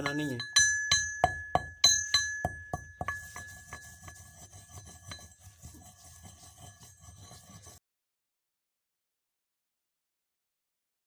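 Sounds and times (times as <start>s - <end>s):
metal pestle strikes: 0.0s - 5.6s
mortar grinding and rubbing: 0.0s - 7.8s.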